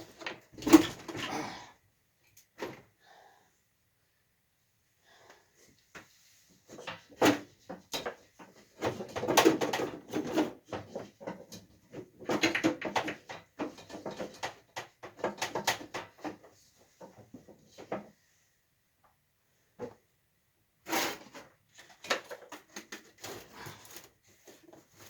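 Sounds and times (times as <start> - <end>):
hard objects knocking and rattling: 6.7 - 18.1.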